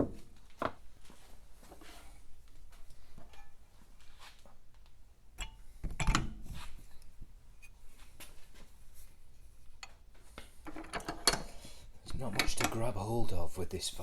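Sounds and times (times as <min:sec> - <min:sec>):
tools clicking and tapping: 0:05.4 - 0:06.4, 0:09.7 - 0:13.0.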